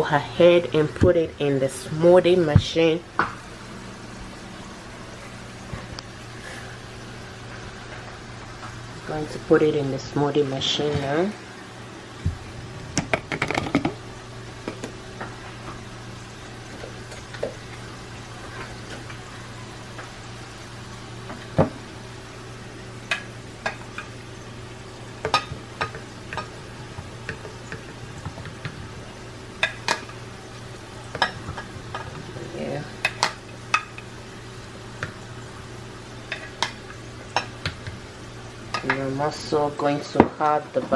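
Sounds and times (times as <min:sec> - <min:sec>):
steady low hum: 0:00.0 - 0:40.9
fruit and containers clicking: 0:13.0 - 0:14.0.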